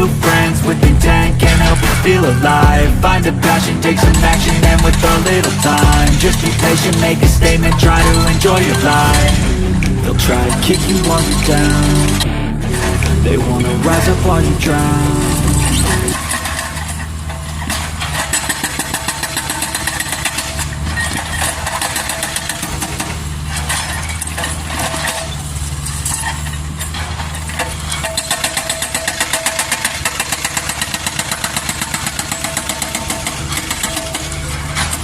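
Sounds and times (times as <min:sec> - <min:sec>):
diesel engine droning: 0:00.0 - 0:35.0
rapid even pulsing: 0:00.3 - 0:16.2.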